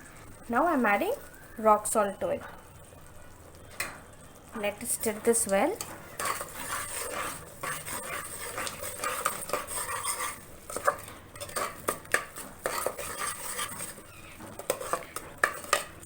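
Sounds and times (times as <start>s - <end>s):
paste sizzling in oil: 4.5s - 16.0s
spoon scraping metal pot: 5.0s - 16.0s.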